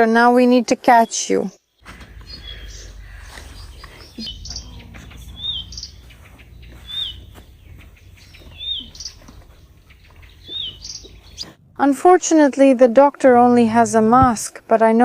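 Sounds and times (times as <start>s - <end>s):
bird chirping: 1.0s - 14.4s
faint higher chirps: 1.8s - 11.8s.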